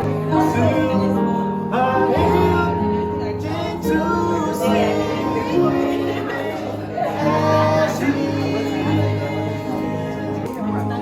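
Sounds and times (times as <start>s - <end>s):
song with singing voice: 0.0s - 11.0s.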